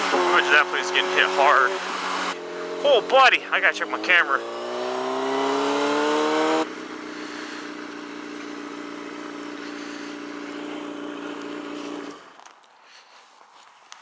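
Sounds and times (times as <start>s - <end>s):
motorcycle engine idling: 0.0s - 12.4s.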